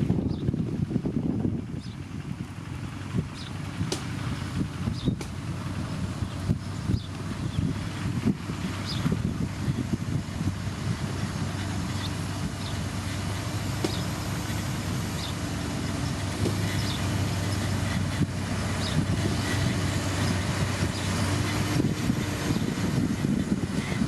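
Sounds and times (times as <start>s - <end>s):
heavy machinery diesel engine: 0.0s - 24.0s.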